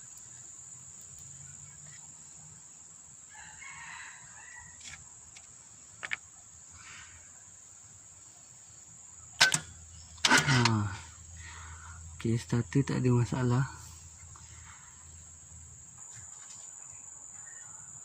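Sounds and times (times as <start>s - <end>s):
high insect drone: 0.0s - 18.0s
distant rooster crowing: 3.2s - 5.0s.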